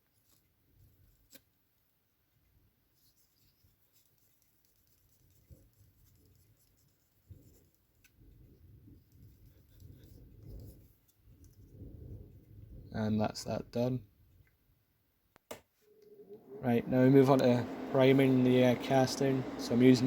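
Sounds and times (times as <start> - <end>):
buffer stick rubbing plastic: 3.0 - 12.5.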